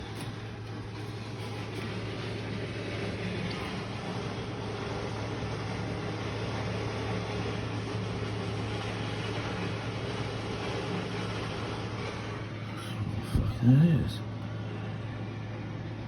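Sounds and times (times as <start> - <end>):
loud low hum: 0.0 - 16.0.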